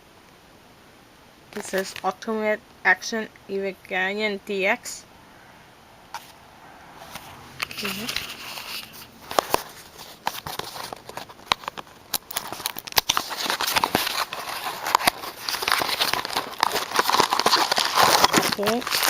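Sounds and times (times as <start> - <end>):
plastic packaging crinkling: 1.6 - 2.2, 7.0 - 19.0.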